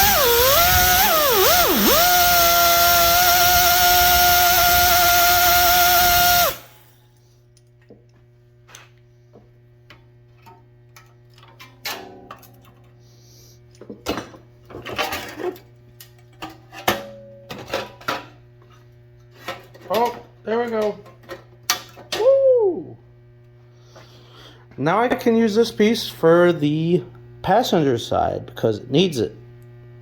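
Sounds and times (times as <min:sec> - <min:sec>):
power tool cutting sheet metal: 0:00.0 - 0:06.9.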